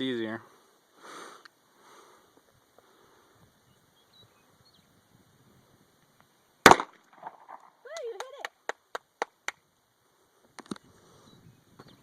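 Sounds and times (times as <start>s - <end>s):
handgun shot: 6.7s - 7.0s.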